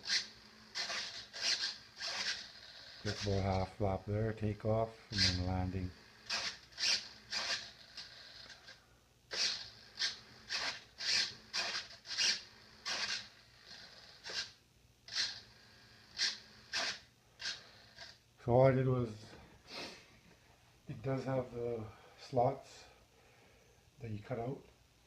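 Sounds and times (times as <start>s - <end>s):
micro servos whirring: 0.0s - 3.5s, 5.1s - 5.5s, 6.1s - 18.2s.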